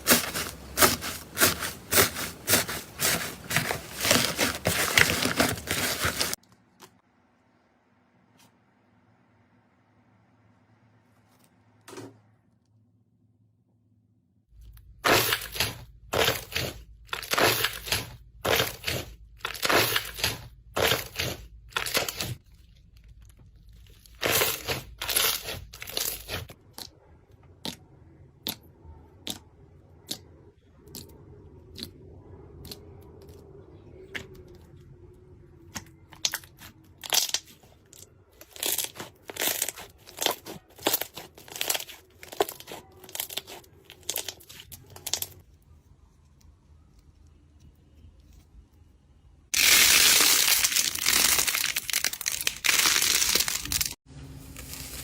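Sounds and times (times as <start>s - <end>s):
slime squelching by hand: 0.0s - 6.4s, 14.8s - 45.5s, 49.6s - 55.0s.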